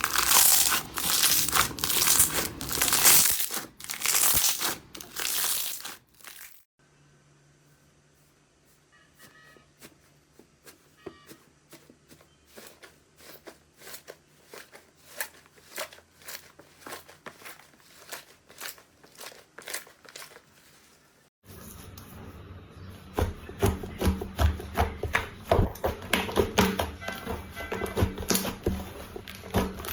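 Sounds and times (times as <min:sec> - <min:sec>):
slime crackling and popping: 0:00.0 - 0:06.6.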